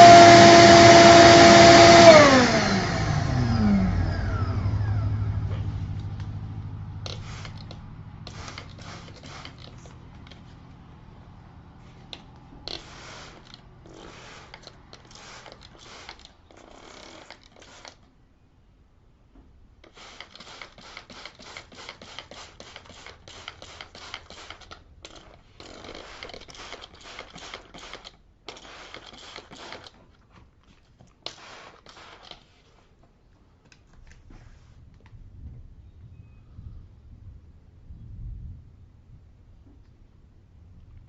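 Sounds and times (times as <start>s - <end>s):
scrubbing cloth seat cover: 12.7s - 18.0s, 31.2s - 32.9s.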